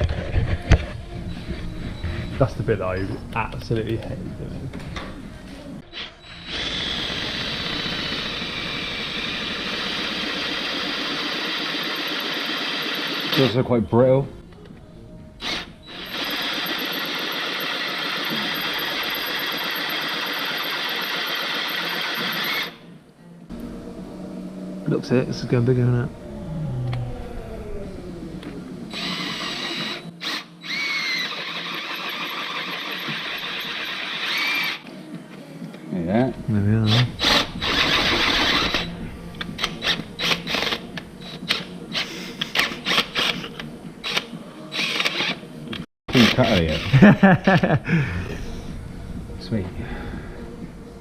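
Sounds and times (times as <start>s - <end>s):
power drill boring into metal: 6.2s - 13.6s, 15.4s - 22.8s, 28.9s - 34.8s, 36.9s - 39.0s, 39.6s - 45.4s
drill bit grinding into metal: 28.9s - 34.8s.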